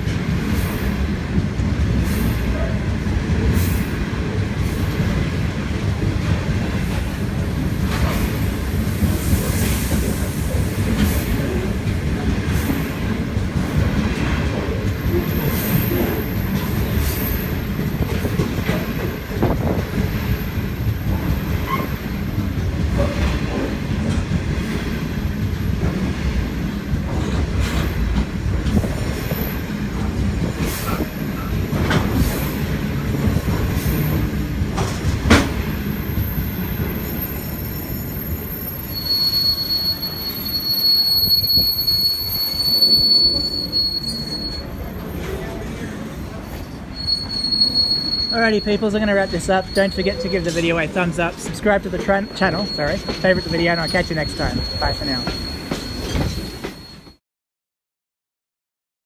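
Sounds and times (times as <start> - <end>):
freight train rumbling past: 0.0 - 57.0
high wheel squeals: 36.0 - 45.3, 46.9 - 57.2.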